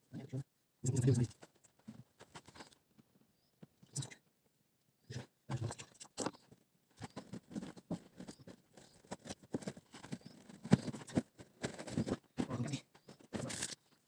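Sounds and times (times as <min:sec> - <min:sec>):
tools tapping and scraping car parts: 0:06.2 - 0:14.0.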